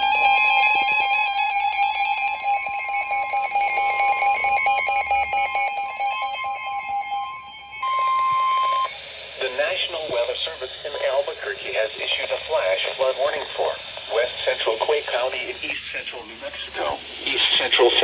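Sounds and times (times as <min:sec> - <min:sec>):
steady high alert tone: 0:01.7 - 0:18.0.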